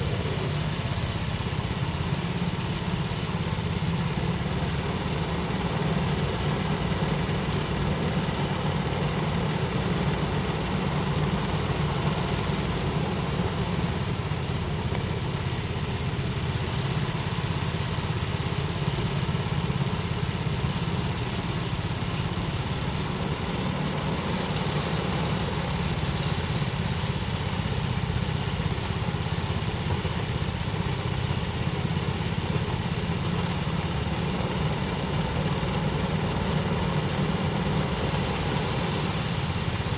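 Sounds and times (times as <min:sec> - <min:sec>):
thresher engine humming: 0:00.0 - 0:39.9.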